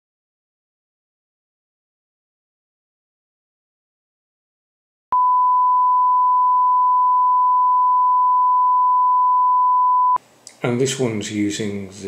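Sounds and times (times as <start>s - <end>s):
steady test tone: 5.2s - 10.2s.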